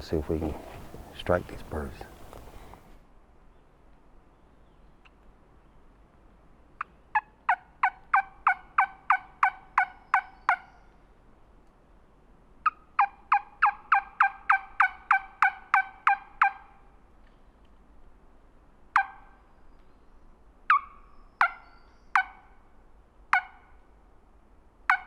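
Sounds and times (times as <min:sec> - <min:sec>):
turkey call yelping: 0:06.8 - 0:10.8, 0:12.6 - 0:16.8, 0:19.0 - 0:19.4, 0:20.7 - 0:22.6, 0:23.3 - 0:23.8.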